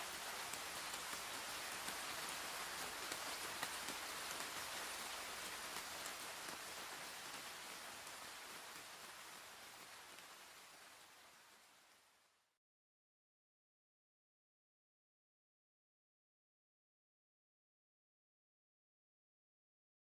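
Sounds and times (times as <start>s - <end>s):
raindrops ticking: 0.0s - 11.2s
rain falling: 0.0s - 12.6s.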